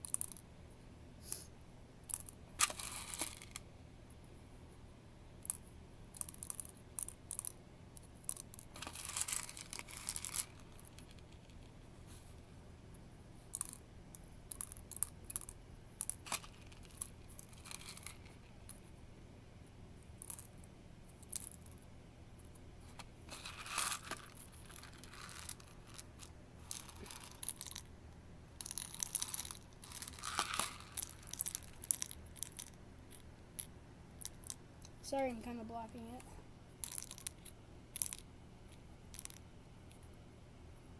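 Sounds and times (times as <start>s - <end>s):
plastic pellets clicking: 2.1s - 3.6s, 8.3s - 11.6s, 14.5s - 18.4s, 23.3s - 27.9s, 28.6s - 34.9s, 36.8s - 40.0s
plastic pellets rattling: 2.1s - 3.6s, 8.3s - 11.7s, 16.1s - 18.5s, 23.3s - 27.9s, 28.6s - 34.6s, 36.8s - 38.2s.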